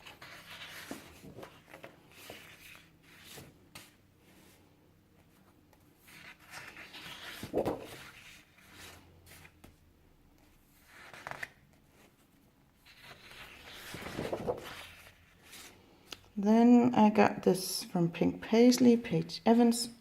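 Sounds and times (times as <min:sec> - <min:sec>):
paper sheets rustling: 0:00.0 - 0:04.6, 0:05.2 - 0:09.8, 0:10.8 - 0:12.1, 0:12.8 - 0:15.8.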